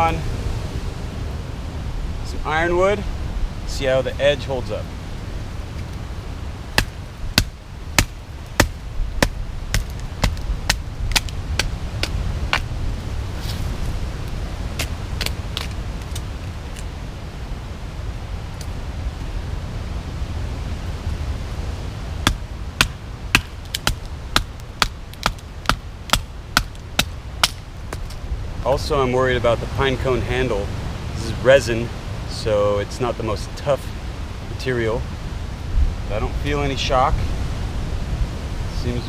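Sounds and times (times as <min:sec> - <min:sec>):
steady low rumble: 0:00.0 - 0:28.6.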